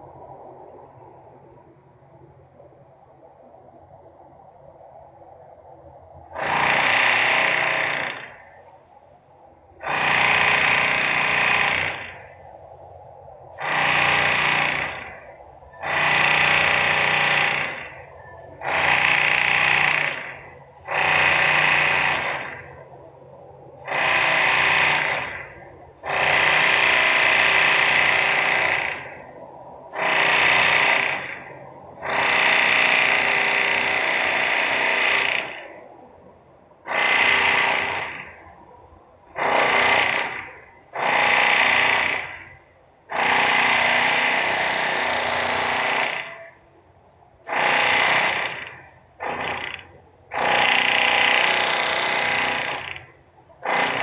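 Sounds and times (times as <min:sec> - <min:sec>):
loud industrial machinery: 0:06.3 - 0:08.6, 0:09.8 - 0:12.4, 0:13.6 - 0:23.0, 0:23.8 - 0:29.3, 0:29.9 - 0:35.8, 0:36.9 - 0:38.4, 0:39.3 - 0:46.6, 0:47.4 - 0:54.0.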